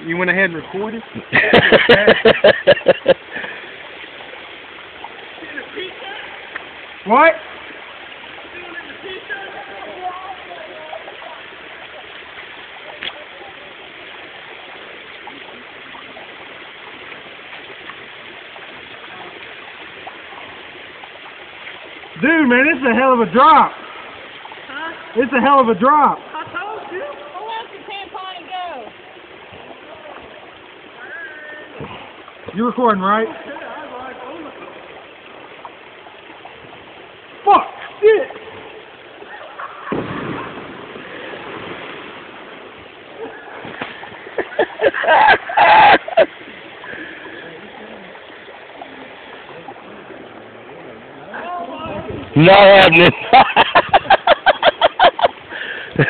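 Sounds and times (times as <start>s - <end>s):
water flowing over waterfall: 0.0s - 56.0s
heavy splash into water: 37.4s - 47.5s
people shouting: 45.1s - 46.2s.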